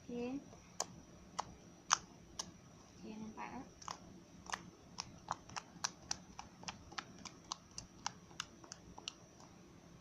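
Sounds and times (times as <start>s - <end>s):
slime clicking and popping: 0.8s - 2.6s, 3.8s - 9.6s.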